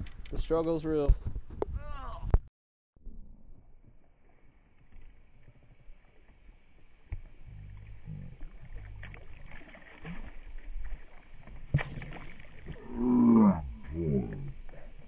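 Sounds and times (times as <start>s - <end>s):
low uneven humming: 3.3s - 15.0s.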